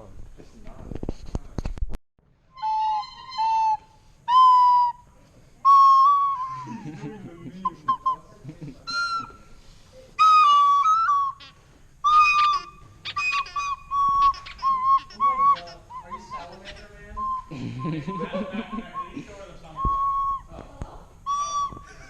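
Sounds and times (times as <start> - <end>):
whistle piping a halting tune: 2.5 - 6.8, 7.7 - 8.3, 8.9 - 9.5, 10.1 - 20.6, 21.2 - 22.0.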